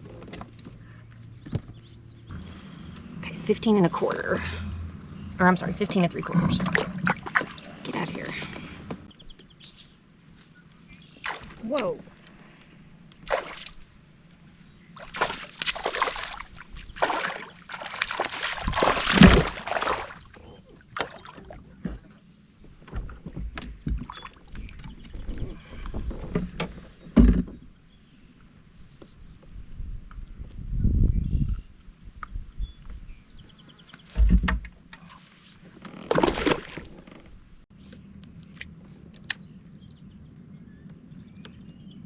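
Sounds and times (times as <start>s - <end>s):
water splashing: 5.4s - 8.8s, 11.2s - 12.0s, 13.2s - 13.9s, 15.0s - 22.1s, 36.1s - 37.0s.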